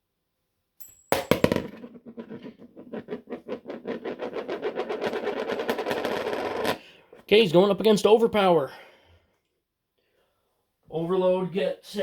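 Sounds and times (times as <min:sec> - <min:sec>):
coin spinning and rattling: 0:01.2 - 0:06.8.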